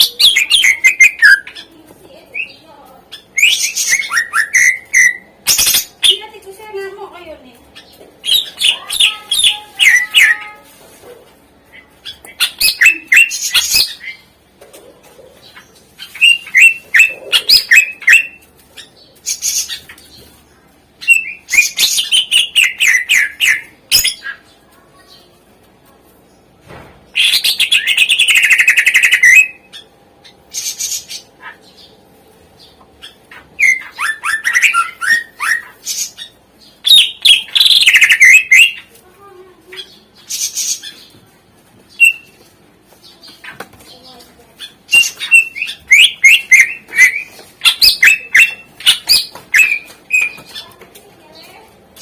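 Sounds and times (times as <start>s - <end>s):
bird singing varied song: 0.0s - 6.8s, 7.6s - 10.6s, 11.7s - 14.4s, 15.4s - 25.4s, 27.1s - 38.9s, 39.6s - 51.7s.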